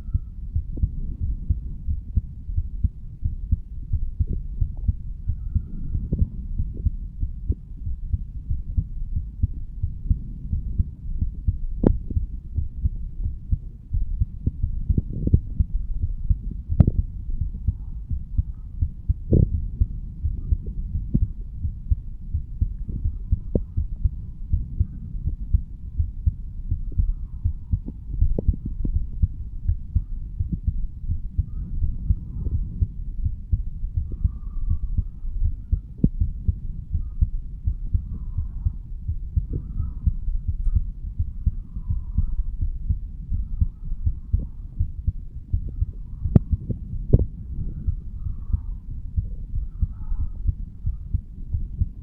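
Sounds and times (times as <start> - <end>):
continuous low rumble: 0.0 - 52.0
heartbeat thuds: 0.0 - 52.0.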